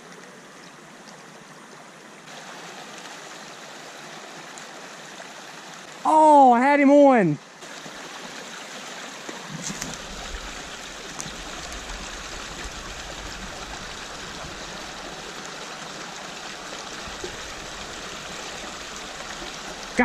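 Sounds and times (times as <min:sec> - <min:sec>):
stream trickling: 0:00.0 - 0:20.0.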